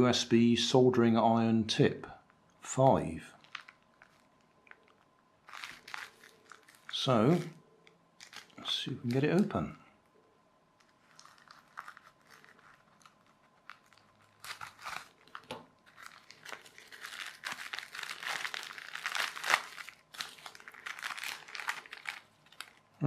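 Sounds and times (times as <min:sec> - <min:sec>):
packaging crinkling and tearing: 0:03.3 - 0:09.2, 0:10.8 - 0:23.0.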